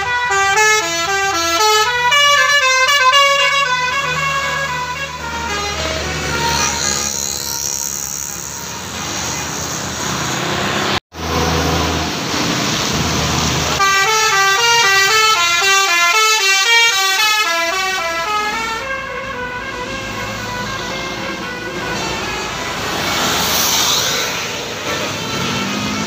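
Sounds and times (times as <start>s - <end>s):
musical air horns tune: 13.8s - 26.0s.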